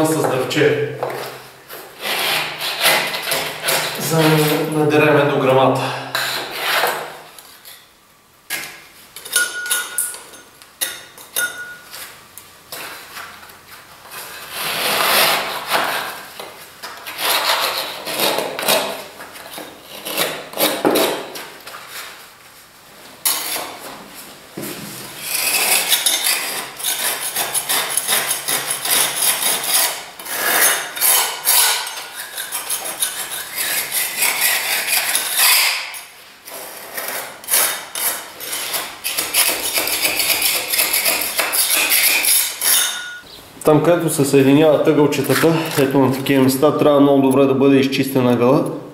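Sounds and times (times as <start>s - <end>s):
hand tool scraping plaster: 1.2s - 4.9s, 6.1s - 7.8s, 14.0s - 22.0s, 25.0s - 43.0s.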